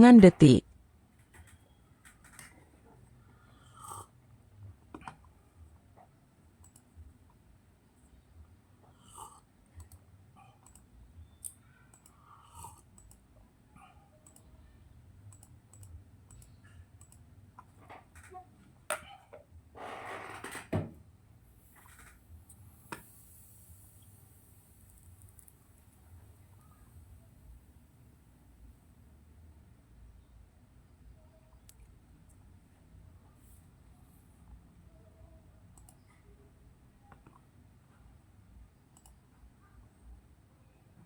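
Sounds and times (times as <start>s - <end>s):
keyboard and mouse clicks: 6.6s - 6.9s, 9.8s - 10.0s, 10.6s - 12.2s, 12.9s - 13.2s, 14.2s - 14.6s, 15.3s - 19.1s, 35.8s - 36.2s, 38.9s - 39.2s.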